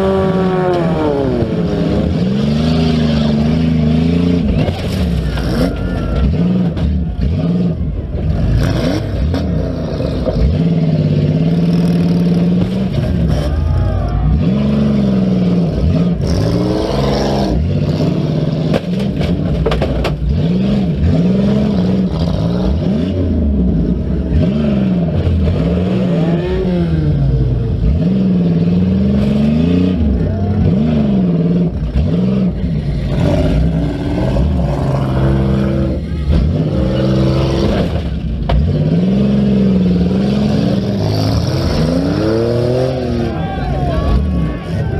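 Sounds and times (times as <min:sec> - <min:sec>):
car engines revving: 0:00.0 - 0:44.9
cars crashing bangs: 0:18.6 - 0:21.1.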